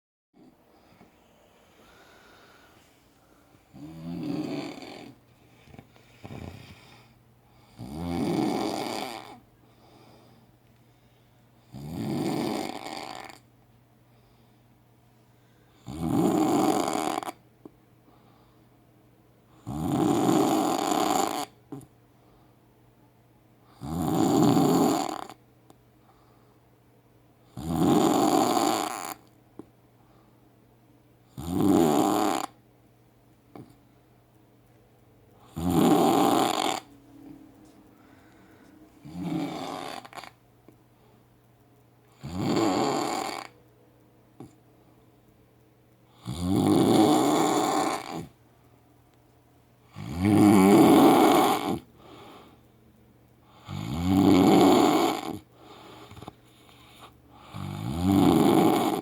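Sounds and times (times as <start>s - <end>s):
quiet breaths: 0.4s - 59.0s
loud snoring: 3.7s - 5.2s, 6.2s - 6.9s, 7.6s - 9.4s, 11.7s - 13.4s, 15.8s - 17.4s, 19.6s - 21.9s, 23.8s - 25.4s, 27.5s - 29.3s, 31.3s - 32.6s, 35.4s - 36.9s, 39.0s - 40.4s, 42.2s - 43.5s, 46.2s - 48.3s, 49.9s - 52.3s, 53.6s - 56.3s, 56.9s - 59.0s.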